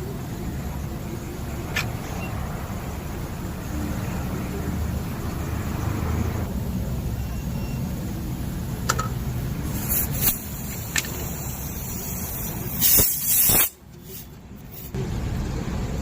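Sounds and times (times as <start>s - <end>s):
low rumble of traffic: 0.0s - 16.0s
hiss: 9.6s - 15.0s.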